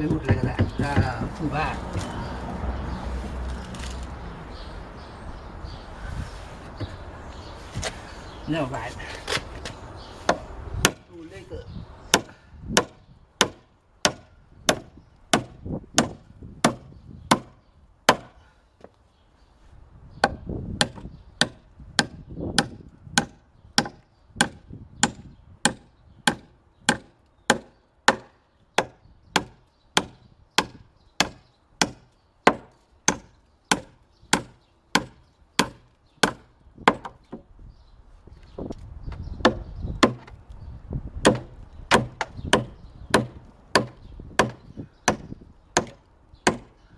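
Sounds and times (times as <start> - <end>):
hammer blows on wood: 41.2 - 46.7.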